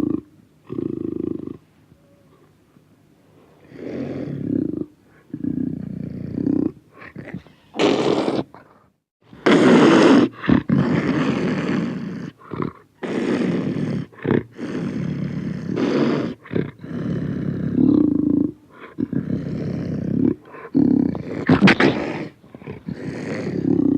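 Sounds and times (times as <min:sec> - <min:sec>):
tiger roaring and growling: 0:10.2 - 0:23.9.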